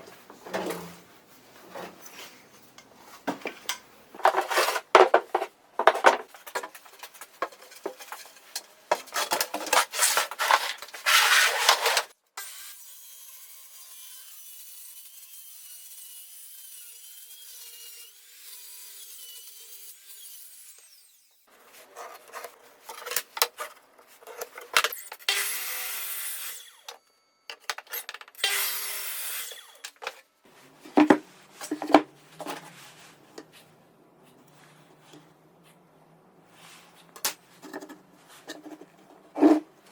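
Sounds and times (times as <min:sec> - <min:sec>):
hand tool scraping wood: 0:04.2 - 0:12.1, 0:36.6 - 0:39.7.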